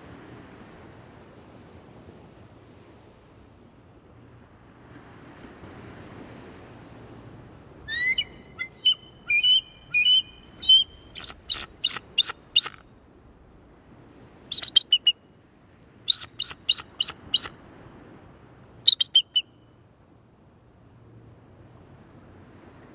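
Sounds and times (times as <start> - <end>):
eagle piping calls: 7.9 - 12.8, 14.5 - 15.2, 16.1 - 17.5, 18.9 - 19.5.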